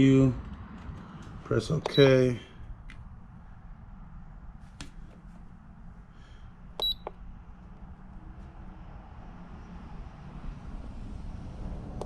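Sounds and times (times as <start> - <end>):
low steady hum: 0.0 - 12.0
button clicks: 1.8 - 2.0, 6.8 - 7.2.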